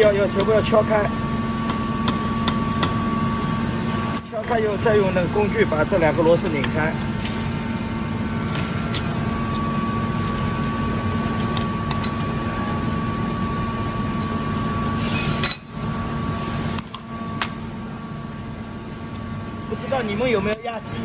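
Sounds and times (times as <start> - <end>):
metal tools clinking: 4.1 - 4.9, 15.2 - 15.8, 16.8 - 17.7, 19.9 - 21.0.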